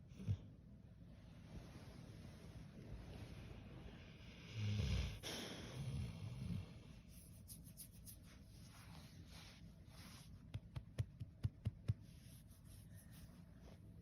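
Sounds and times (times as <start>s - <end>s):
dog snoring: 4.3s - 6.9s.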